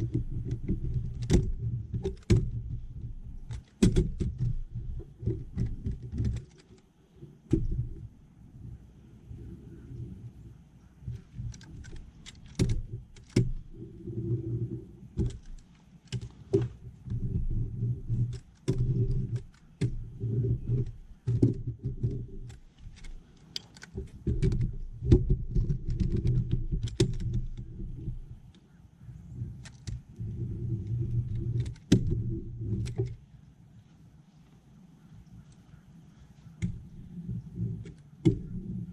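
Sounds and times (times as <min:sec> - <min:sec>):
pressure roller rumbling over foam: 0:00.0 - 0:06.4, 0:11.0 - 0:28.5, 0:29.3 - 0:33.2, 0:36.6 - 0:38.9
sharp clicks and knocks: 0:00.0 - 0:08.1, 0:11.1 - 0:28.6, 0:29.4 - 0:33.2, 0:36.5 - 0:38.9.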